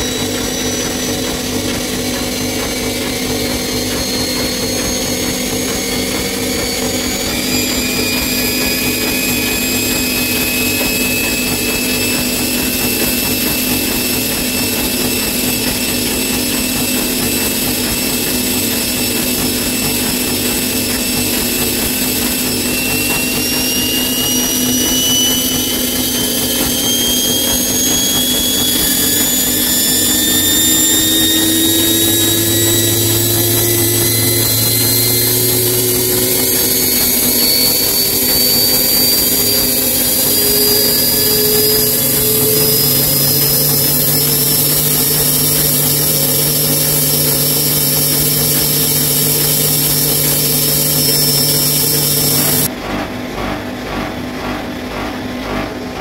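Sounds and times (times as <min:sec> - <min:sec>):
high motor whine: 0:00.0 - 0:53.1
washing machine spinning: 0:00.0 - 0:56.0.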